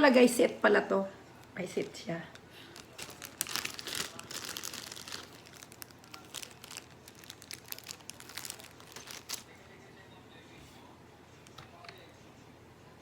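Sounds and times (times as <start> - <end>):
plastic packaging crinkling: 1.8 - 9.6.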